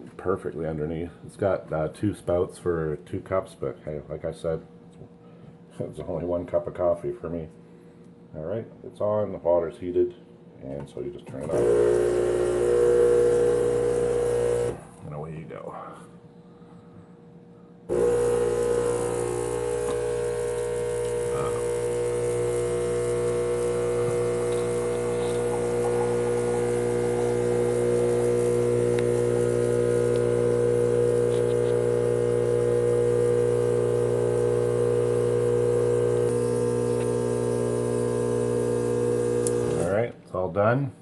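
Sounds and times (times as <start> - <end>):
espresso machine pump humming: 11.5 - 14.8, 17.9 - 39.9.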